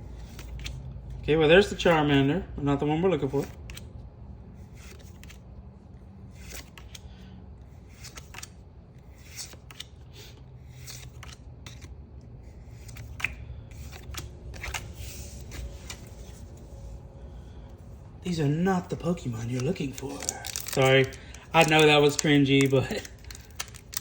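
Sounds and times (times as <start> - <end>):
trading cards sliding: 4.6 - 5.5, 6.2 - 24.0.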